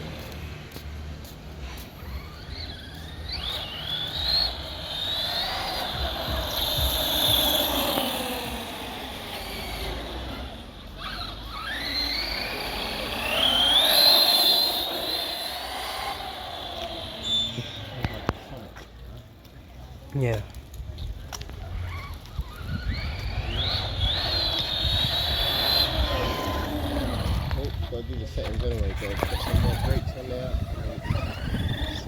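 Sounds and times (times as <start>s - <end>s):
high electric motor whine: 1.9s - 18.7s, 22.6s - 28.2s.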